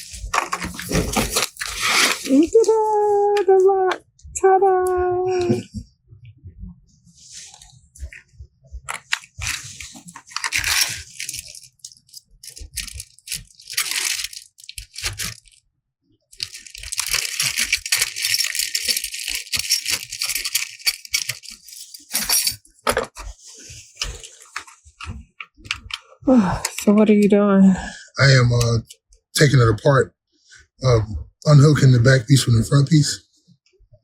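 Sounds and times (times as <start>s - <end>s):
parts rattling: 0.0s - 2.6s, 8.9s - 15.6s, 16.4s - 23.2s
packaging crinkling: 0.0s - 3.0s, 8.9s - 15.6s, 16.4s - 21.7s.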